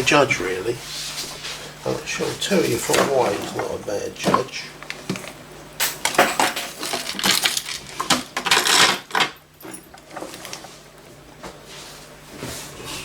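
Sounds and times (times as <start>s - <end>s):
small metal objects clinking: 5.8s - 10.0s.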